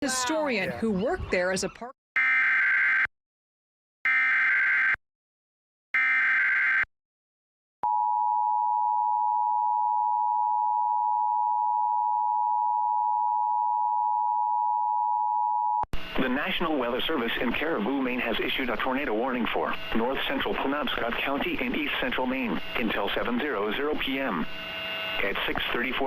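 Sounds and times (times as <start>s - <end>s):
digital data bursts: 16.0s - 26.0s.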